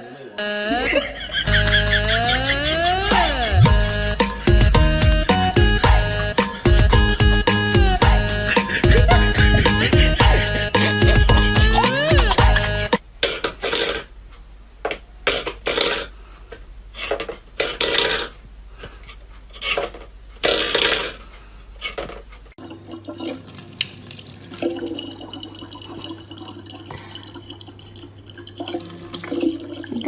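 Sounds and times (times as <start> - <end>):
low hum: 0.7 - 13.0
water splashing: 22.6 - 30.0.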